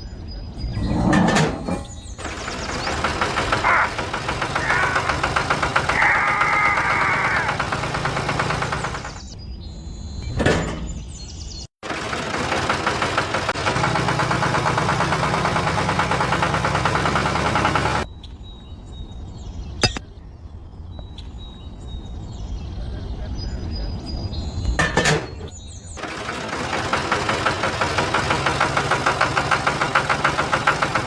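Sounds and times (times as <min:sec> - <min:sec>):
toy motor and gears clattering: 0:02.2 - 0:09.4.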